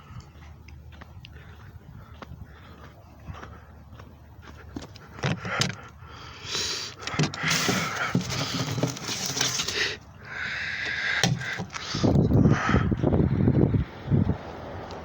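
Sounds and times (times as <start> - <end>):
plastic case rustling and crinkling: 7.1 - 10.0, 11.2 - 11.8
heavy knocks: 11.2 - 11.8.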